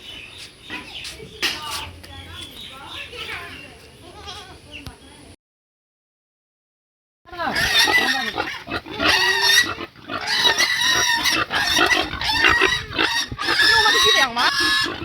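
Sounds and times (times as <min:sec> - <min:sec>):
pig squealing: 0:07.3 - 0:15.0.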